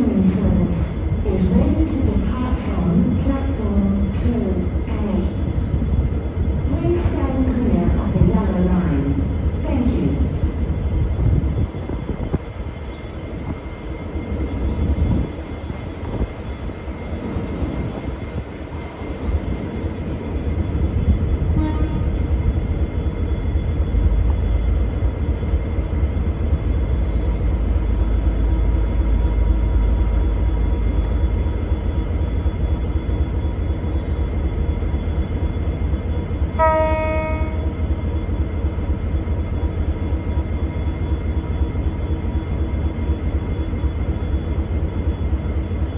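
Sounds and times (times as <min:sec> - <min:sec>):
diesel train engines rumbling: 0:00.0 - 0:45.9
low train horn: 0:21.5 - 0:22.2, 0:36.5 - 0:37.7.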